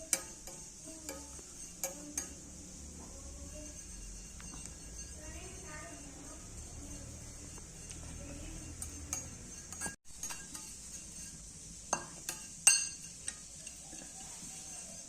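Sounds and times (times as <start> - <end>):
metal utensils clinking on pots: 0.0 - 15.0.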